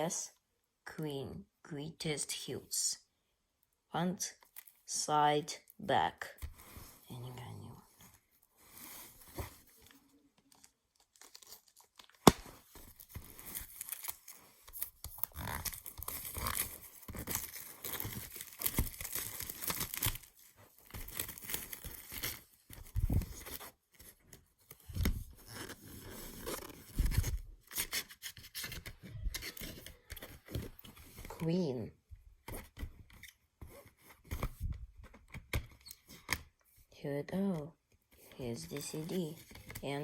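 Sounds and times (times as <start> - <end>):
plastic wrapping tearing and crinkling: 10.4 - 23.5.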